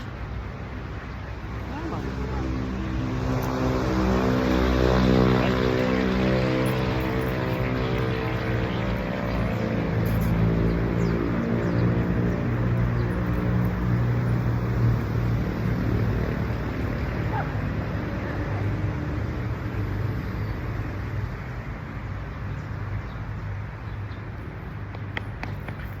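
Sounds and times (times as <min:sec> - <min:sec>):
outdoor road noise: 0:00.0 - 0:26.0
vehicle engine hum: 0:00.0 - 0:26.0.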